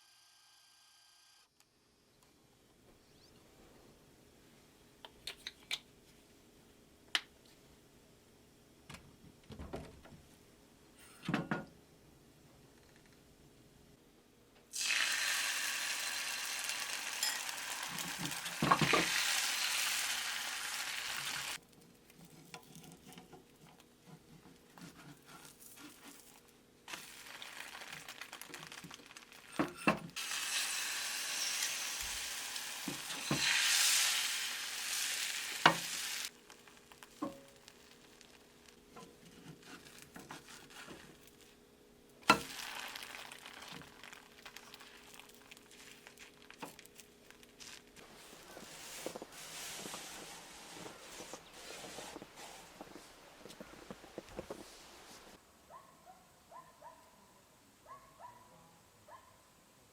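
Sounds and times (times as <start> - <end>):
food sizzling in a frying pan: 14.7 - 21.6, 26.9 - 29.6, 30.2 - 36.3, 42.2 - 46.1.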